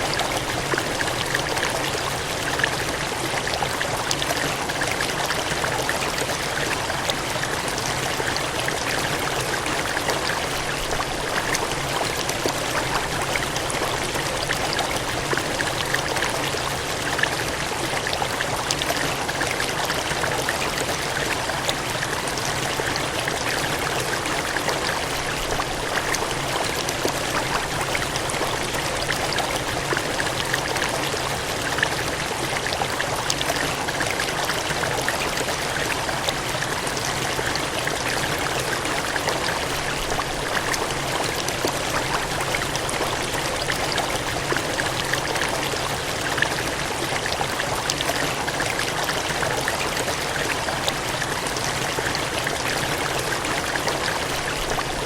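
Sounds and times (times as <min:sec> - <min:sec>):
gushing water: 0:00.0 - 0:55.0.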